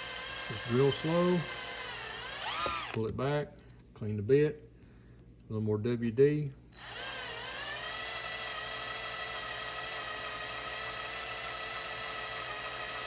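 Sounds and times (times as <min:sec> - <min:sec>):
electric drill whining: 0:00.0 - 0:03.0, 0:06.8 - 0:13.0.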